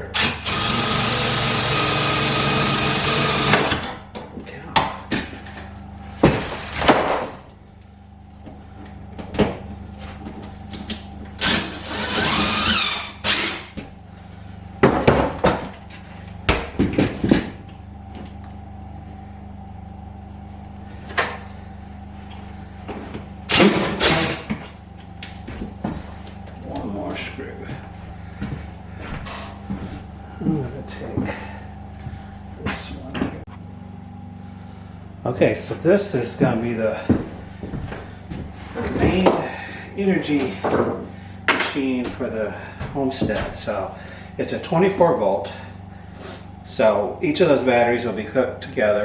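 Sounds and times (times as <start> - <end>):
power drill running: 0.0 - 4.0, 11.3 - 13.8, 23.5 - 24.6
steady low hum: 0.0 - 49.0.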